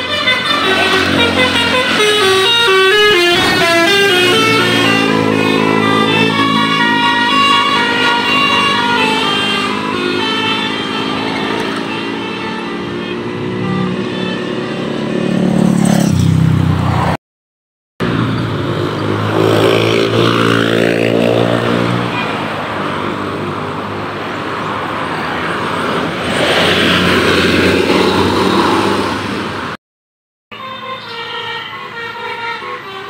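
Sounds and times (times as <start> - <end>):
large vehicles droning past: 0.0 - 17.2, 18.0 - 29.8.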